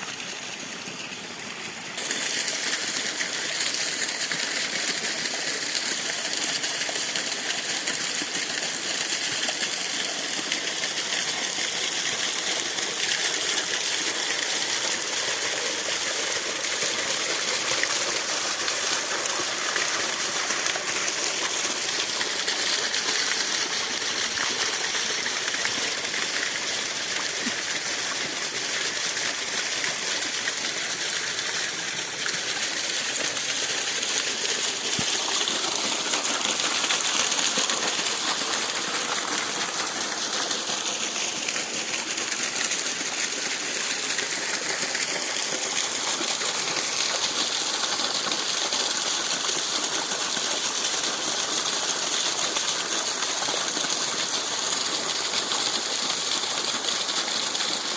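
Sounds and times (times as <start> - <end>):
waterfall pouring and splashing: 0.0 - 57.9.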